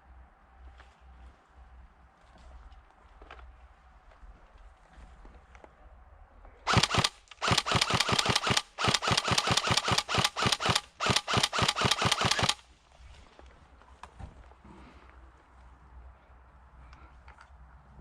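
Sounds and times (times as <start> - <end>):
airsoft gun firing bursts: 6.7 - 12.6.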